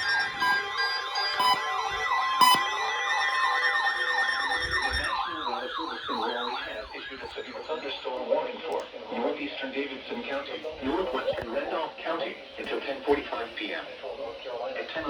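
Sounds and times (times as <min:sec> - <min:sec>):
steady alert tone: 0:00.0 - 0:00.7, 0:01.4 - 0:01.7
beeping: 0:00.0 - 0:08.1
electronic siren alarms warbling: 0:00.0 - 0:08.1.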